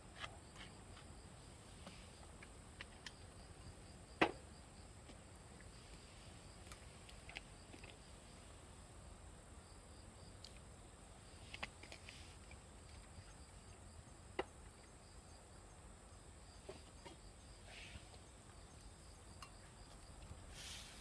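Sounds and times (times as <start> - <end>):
insects trilling: 0.1 - 21.0.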